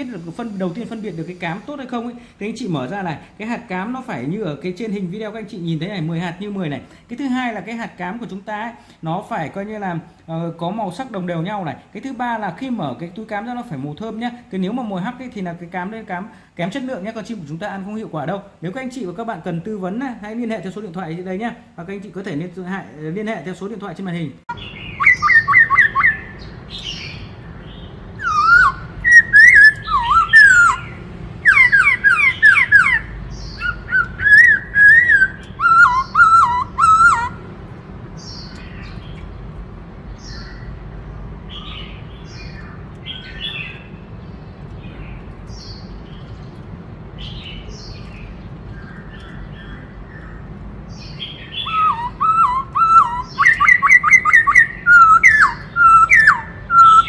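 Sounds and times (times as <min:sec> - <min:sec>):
steady low hum: 0:24.4 - 0:57.0
bird singing whistled phrases: 0:24.5 - 0:27.2, 0:28.2 - 0:37.4, 0:51.2 - 0:57.0.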